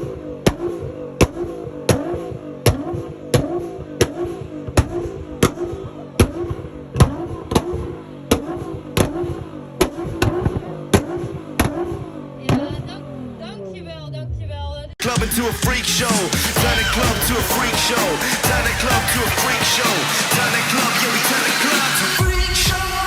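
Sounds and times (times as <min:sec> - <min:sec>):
car engine revving: 0:00.0 - 0:23.0
sharp exhaust bangs: 0:00.0 - 0:23.0.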